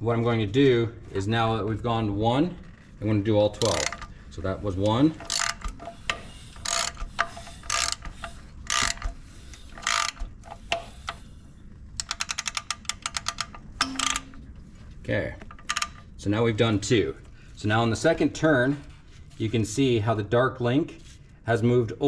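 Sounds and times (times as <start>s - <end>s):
ratchet wrench clicking: 3.6s - 4.1s, 5.2s - 11.2s, 12.0s - 14.4s, 15.5s - 16.1s.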